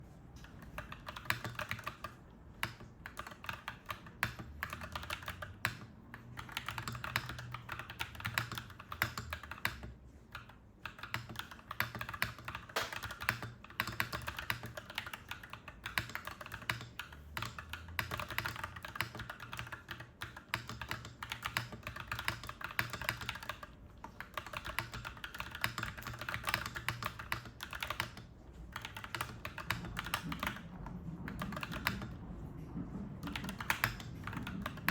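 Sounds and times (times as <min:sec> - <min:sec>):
mechanical keyboard typing: 0:00.4 - 0:34.9
low steady hum: 0:14.4 - 0:34.9.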